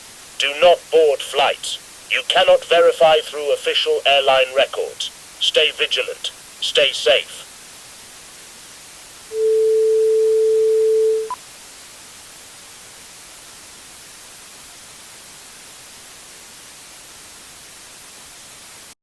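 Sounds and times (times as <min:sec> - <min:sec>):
static hiss: 0:00.0 - 0:19.0
loud electronic beep tone: 0:09.4 - 0:11.4.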